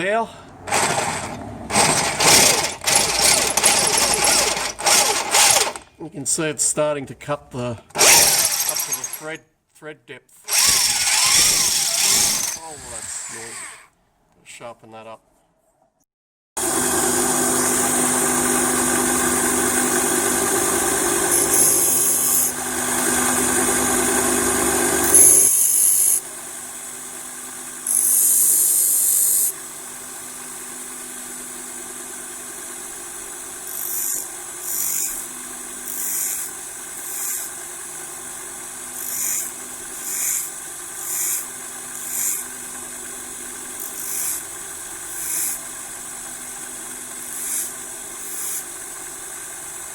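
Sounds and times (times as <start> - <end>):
drill bit grinding: 0.6 - 5.9, 7.9 - 9.4, 10.5 - 13.9, 16.6 - 26.3, 27.8 - 29.6, 32.9 - 38.2, 38.9 - 49.9
electric grinder humming: 0.6 - 5.9, 8.0 - 9.3, 10.5 - 13.6, 16.6 - 26.3, 30.5 - 49.9.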